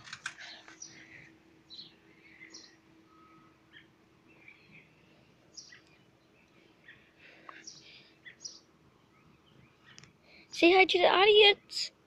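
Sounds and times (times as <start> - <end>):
faint high chirps: 0.5 - 10.1.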